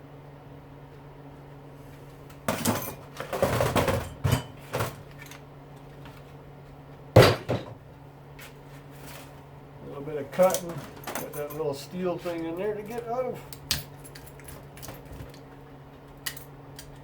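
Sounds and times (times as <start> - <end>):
steady low hum: 0.0 - 17.0
motor parts clattering: 10.4 - 13.1.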